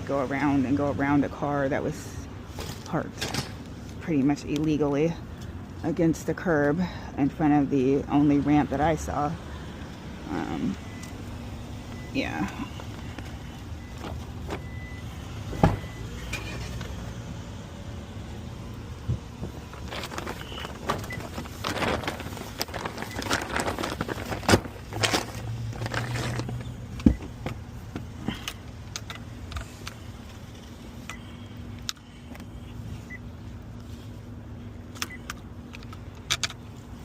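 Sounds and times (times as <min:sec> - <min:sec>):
rattling and scraping: 0:19.4 - 0:26.8.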